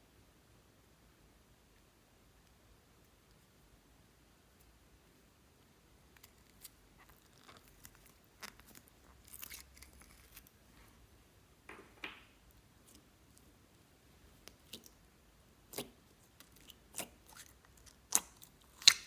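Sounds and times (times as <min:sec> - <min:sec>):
slime crackling and clicking: 0:15.7 - 0:19.0
slime popping: 0:15.7 - 0:19.0.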